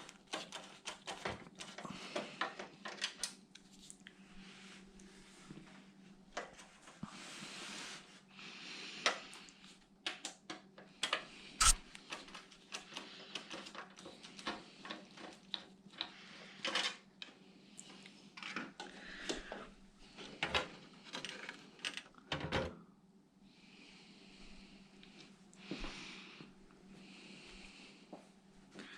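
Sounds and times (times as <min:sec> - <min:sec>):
clicks and clatters of small parts: 0:00.0 - 0:04.0, 0:10.0 - 0:19.5, 0:20.2 - 0:22.5
faint steady hum: 0:14.4 - 0:28.9.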